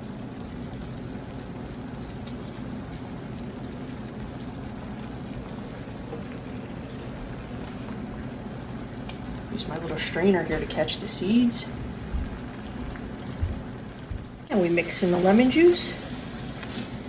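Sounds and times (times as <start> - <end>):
sauce simmering in a pan: 0.0 - 17.0.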